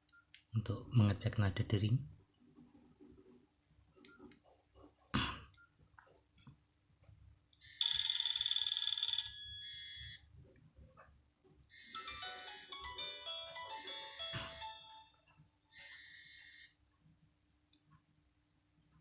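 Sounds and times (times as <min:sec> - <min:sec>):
ringtone melody of short notes: 0:11.9 - 0:15.2.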